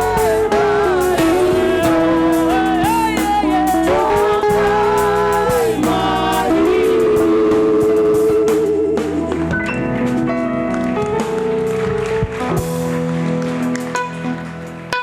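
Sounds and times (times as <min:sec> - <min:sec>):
gospel singing voices: 0:00.0 - 0:09.5
band with steady bass and beats: 0:00.0 - 0:15.0.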